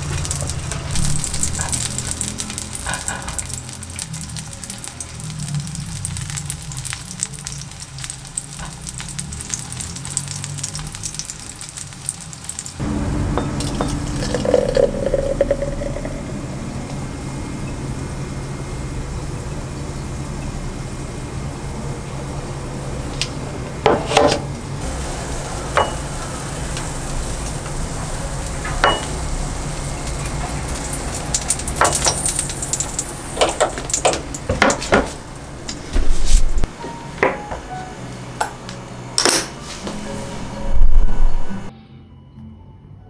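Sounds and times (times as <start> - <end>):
dishes and utensils clinking: 0.0 - 5.2, 12.8 - 17.0, 25.3 - 38.6, 39.2 - 41.5
loud low rumble: 12.8 - 23.8, 40.0 - 41.7.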